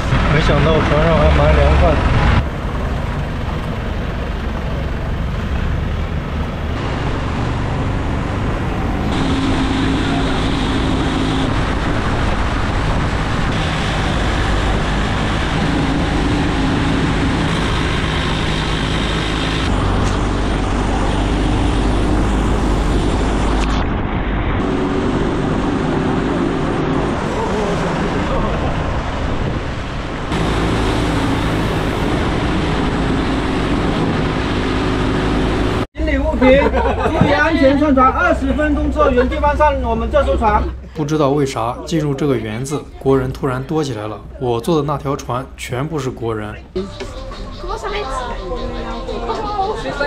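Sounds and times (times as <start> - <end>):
water rushing: 0.0 - 35.9
motorboat engine humming: 0.0 - 50.0.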